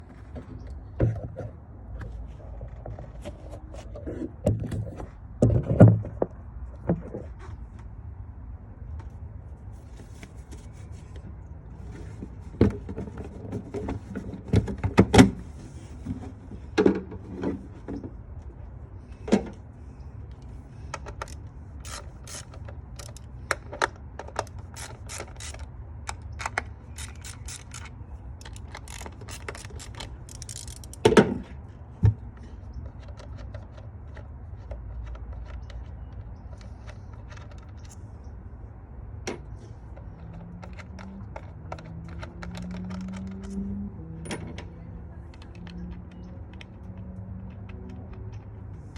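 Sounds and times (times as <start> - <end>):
hand tools clicking and knocking: 20.9 - 31.6, 39.3 - 48.8.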